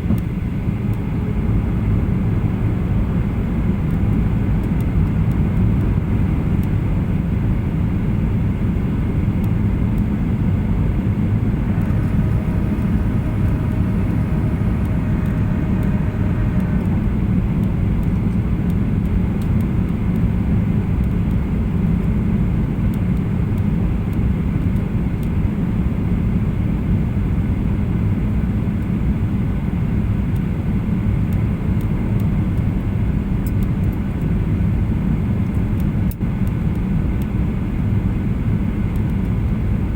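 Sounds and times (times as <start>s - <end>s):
airliner cabin engine drone: 0.0s - 39.9s
faint high whine: 11.3s - 18.0s.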